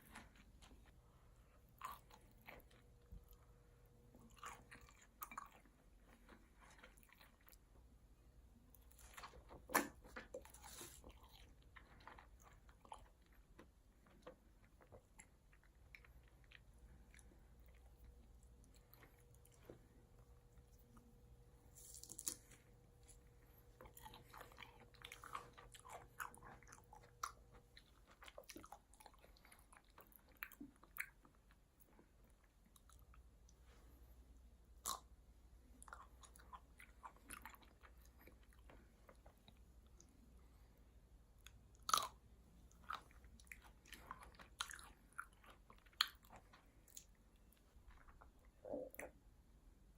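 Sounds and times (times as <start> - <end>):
person chewing food: 0.0 - 49.3
food crunches: 21.7 - 27.4.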